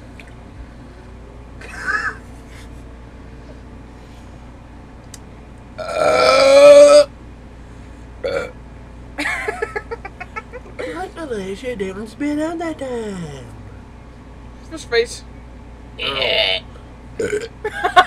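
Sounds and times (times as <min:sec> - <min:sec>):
person burping loudly: 0:05.8 - 0:07.1, 0:08.2 - 0:08.6, 0:17.2 - 0:17.6.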